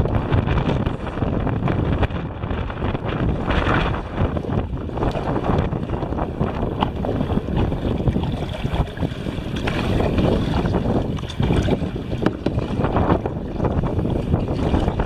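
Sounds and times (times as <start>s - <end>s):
wind buffeting microphone: 0.0s - 15.0s
paddle splashes: 3.0s - 15.0s.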